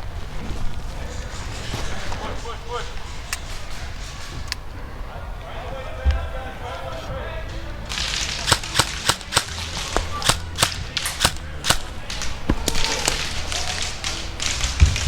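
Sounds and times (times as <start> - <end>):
airsoft gun single shots: 7.9 - 15.0.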